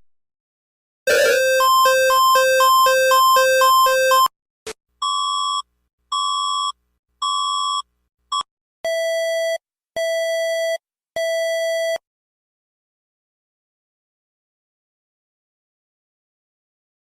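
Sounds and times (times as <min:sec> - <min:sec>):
electronic alert beeps: 0:01.1 - 0:04.3
two-pitch alarm tone: 0:01.1 - 0:04.3.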